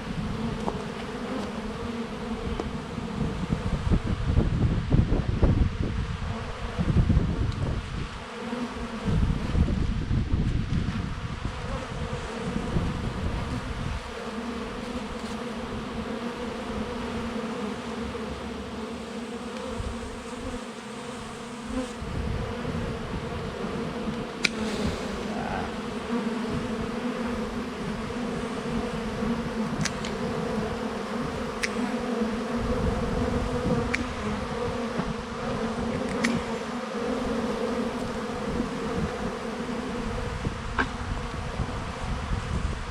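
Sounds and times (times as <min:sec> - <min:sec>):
honey bees buzzing: 0:00.0 - 0:04.1, 0:08.1 - 0:09.7, 0:11.0 - 0:42.4
wind rumble on microphone: 0:00.0 - 0:42.9
faint clicks: 0:29.8 - 0:30.2, 0:31.6 - 0:31.8.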